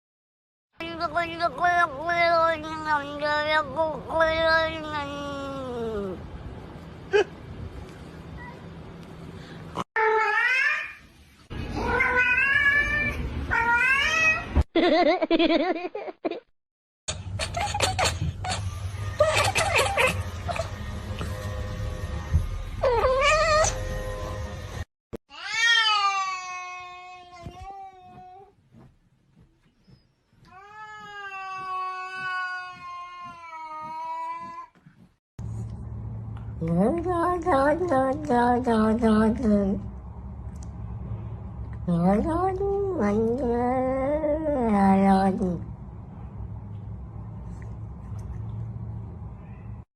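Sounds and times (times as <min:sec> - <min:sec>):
cat wavering warbling cry: 0:19.2 - 0:20.8, 0:22.8 - 0:23.8.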